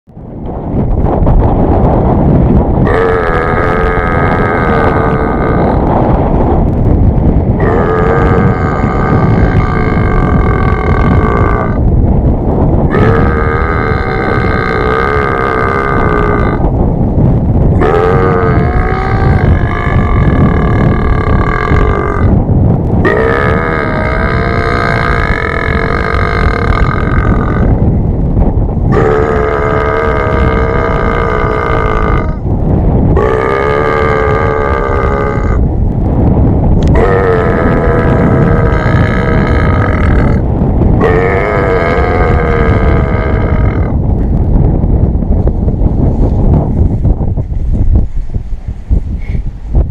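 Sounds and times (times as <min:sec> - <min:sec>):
steady low rumble: 0:00.1 - 0:49.9
person making long burps: 0:02.8 - 0:06.0, 0:07.6 - 0:11.8, 0:12.9 - 0:16.7, 0:17.7 - 0:27.8, 0:28.9 - 0:32.4, 0:33.2 - 0:35.6, 0:36.8 - 0:40.4, 0:41.0 - 0:44.0.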